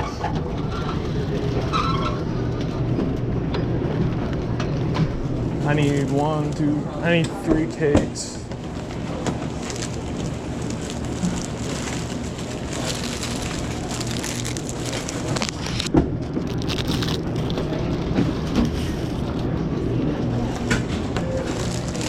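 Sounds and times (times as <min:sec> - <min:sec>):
steady low hum: 0:00.0 - 0:22.0
plastic wrappers crinkling: 0:08.7 - 0:18.0, 0:21.1 - 0:22.0.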